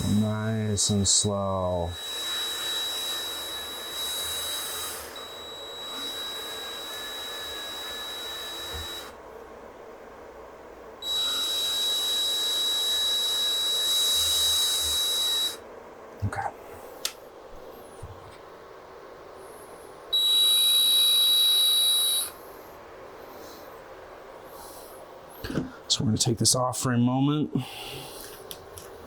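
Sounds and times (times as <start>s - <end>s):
power drill whining into wood: 0.0s - 0.6s, 1.6s - 9.2s, 11.0s - 15.6s, 20.2s - 22.4s.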